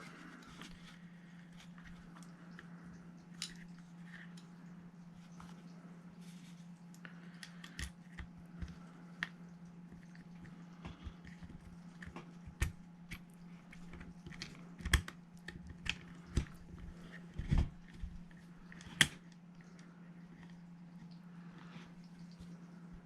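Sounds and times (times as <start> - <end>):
steady low hum: 0.0 - 23.0
small parts clicking and tapping: 6.9 - 20.6.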